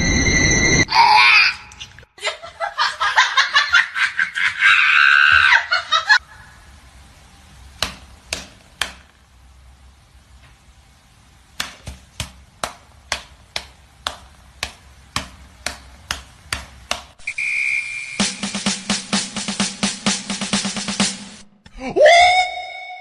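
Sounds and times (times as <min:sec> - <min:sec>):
short high beep: 0:17.2 - 0:18.4.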